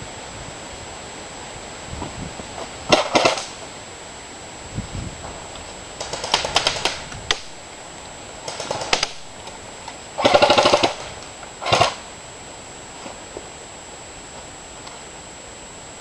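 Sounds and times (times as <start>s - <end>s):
airsoft guns firing bursts: 2.9s - 3.6s, 6.0s - 7.6s, 8.4s - 9.3s, 10.2s - 12.0s.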